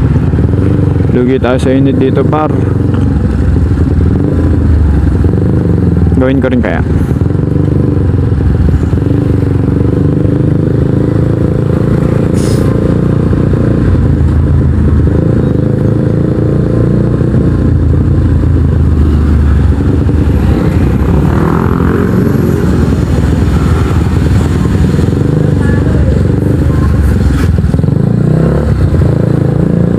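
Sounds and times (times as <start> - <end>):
motorcycle engine drone: 0.0 - 29.9.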